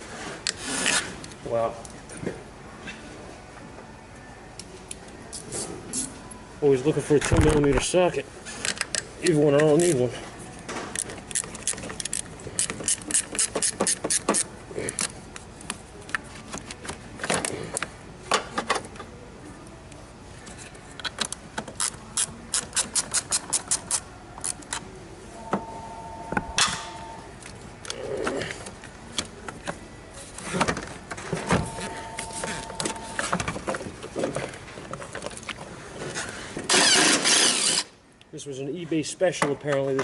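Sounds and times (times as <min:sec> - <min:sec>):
short steady tone: 0:25.4 - 0:27.3, 0:31.4 - 0:33.3.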